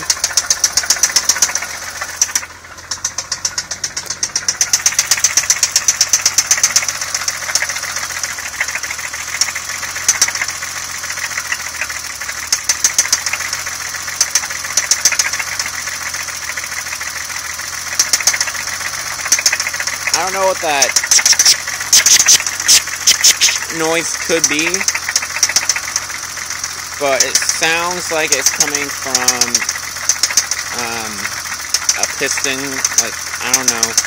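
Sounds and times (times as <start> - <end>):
car engine idling: 0.0 - 34.0
rapid engine knock: 0.0 - 34.0.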